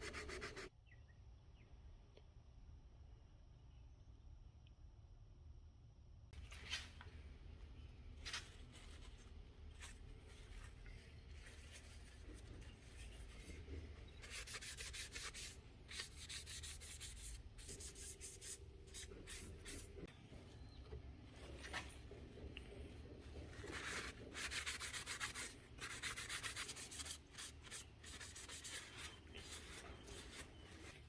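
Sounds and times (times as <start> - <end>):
faint hand sanding strokes: 0.0 - 0.7, 8.8 - 20.1, 21.6 - 31.0.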